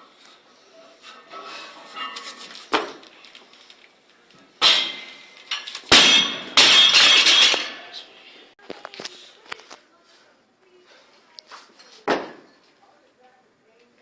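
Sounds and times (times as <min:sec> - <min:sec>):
barbell plates clanging on floor: 0:05.9 - 0:08.0.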